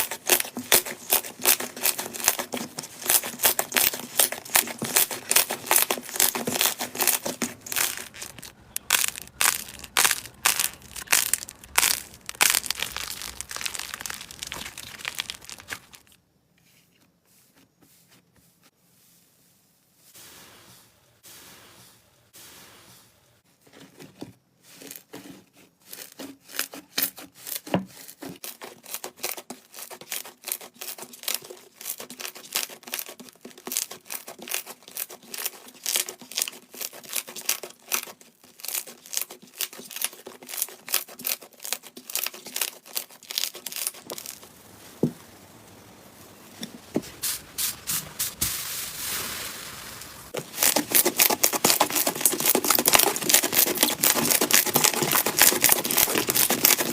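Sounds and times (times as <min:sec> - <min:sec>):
slime squeezed crackling pops: 0:04.9 - 0:16.1.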